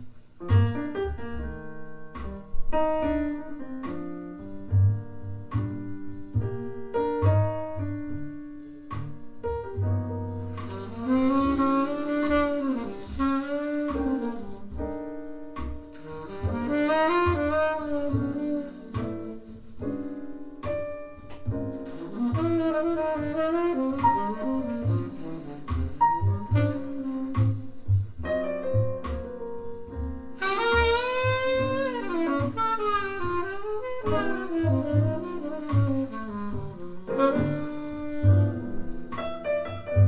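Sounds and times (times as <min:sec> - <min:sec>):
plucked double bass: 0:00.0 - 0:19.6, 0:21.2 - 0:32.6, 0:33.2 - 0:40.0
piano chords: 0:00.0 - 0:40.0
saxophone melody with vibrato: 0:10.7 - 0:15.0, 0:15.9 - 0:19.6, 0:22.0 - 0:27.7, 0:30.4 - 0:38.8.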